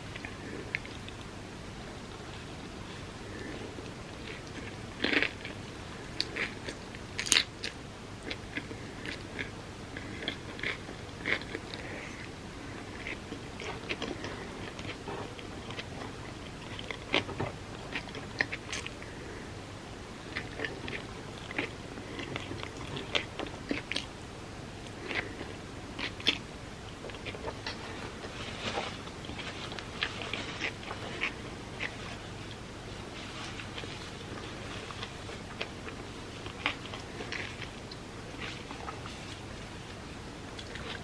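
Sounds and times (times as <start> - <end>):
chewing with wet mouth clicks: 3.3 - 19.1, 20.2 - 24.2, 24.8 - 26.4.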